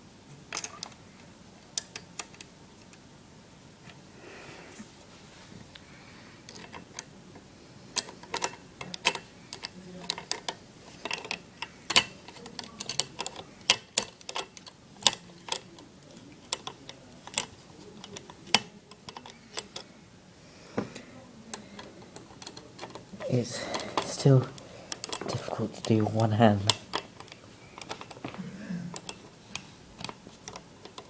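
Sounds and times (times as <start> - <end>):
screwdriver clicking on fan bracket: 6.5 - 7.1, 8.0 - 15.6, 16.4 - 19.8, 20.9 - 31.0.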